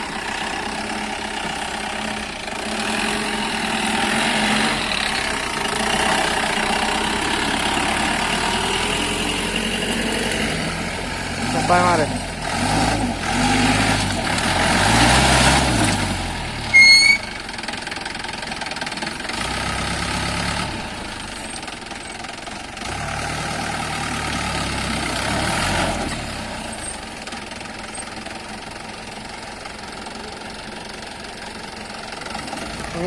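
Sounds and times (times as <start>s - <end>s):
engine running and revving: 0.0s - 17.3s, 18.0s - 33.0s
loud high-pitched beep: 16.7s - 17.4s.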